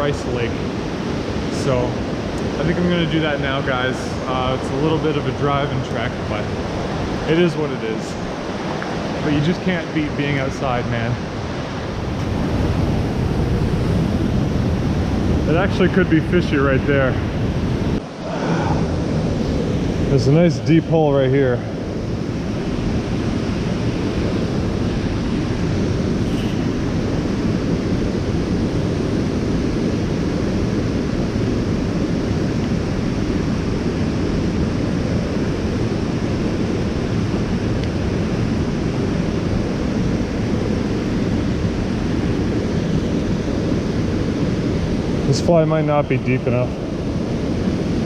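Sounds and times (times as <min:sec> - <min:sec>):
creek rushing: 0:00.0 - 0:22.8.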